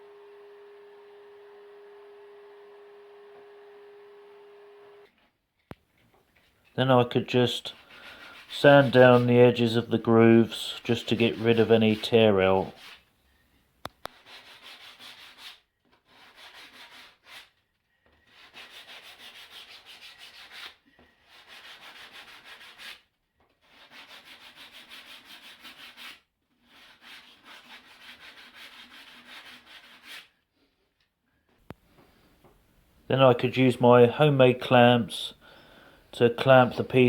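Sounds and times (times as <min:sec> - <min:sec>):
sandpaper rubbing wood: 0:07.5 - 0:13.1, 0:14.1 - 0:17.6, 0:18.2 - 0:30.3.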